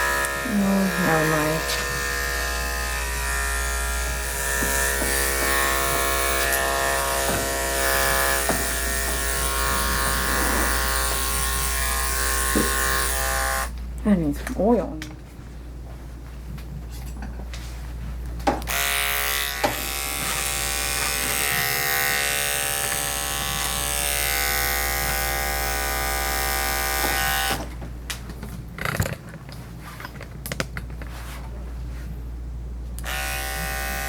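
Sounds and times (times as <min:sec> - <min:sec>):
electric clippers buzzing: 0:00.0 - 0:13.8, 0:18.6 - 0:27.7, 0:33.0 - 0:34.0.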